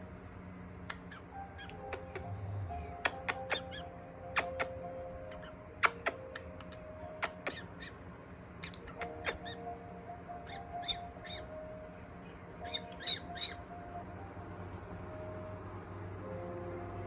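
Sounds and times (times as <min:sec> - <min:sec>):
parrot harsh calls: 0:00.9 - 0:02.2, 0:03.1 - 0:08.0, 0:08.6 - 0:11.6, 0:12.6 - 0:13.6
sharp clicks: 0:03.0 - 0:03.8, 0:04.4 - 0:04.8, 0:05.8 - 0:07.6.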